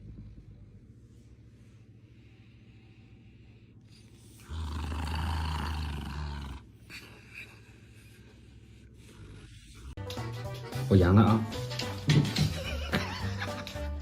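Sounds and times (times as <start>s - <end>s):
animal roaring: 4.4s - 6.6s.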